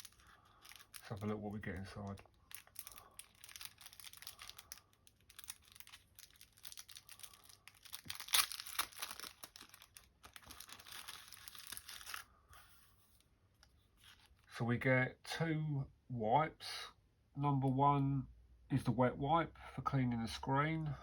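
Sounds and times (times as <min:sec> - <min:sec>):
packaging crinkling and rustling: 0:00.0 - 0:14.5.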